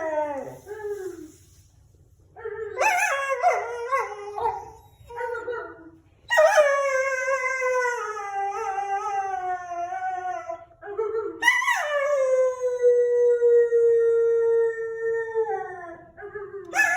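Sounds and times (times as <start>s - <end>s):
dog howling: 0.0s - 1.4s, 2.4s - 5.7s, 6.3s - 10.7s.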